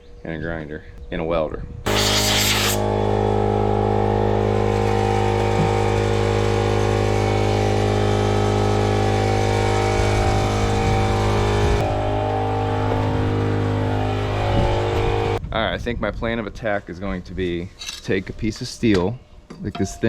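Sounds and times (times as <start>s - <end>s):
small engine running: 1.9s - 15.4s.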